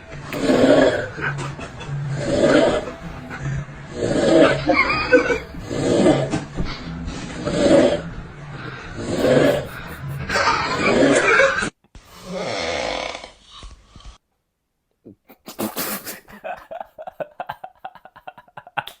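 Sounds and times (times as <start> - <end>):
person snoring loudly: 0.3 - 6.4, 7.4 - 13.7.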